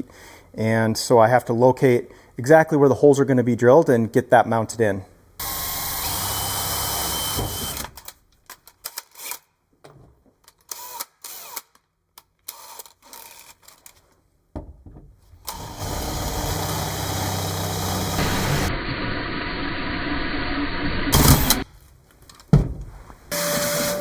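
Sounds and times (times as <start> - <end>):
power tool motor running: 15.5 - 21.6.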